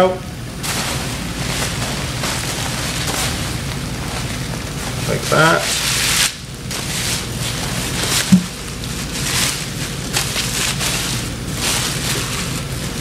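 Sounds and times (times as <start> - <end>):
plastic bag rustling: 0.6 - 13.0
short knock: 8.3 - 8.6.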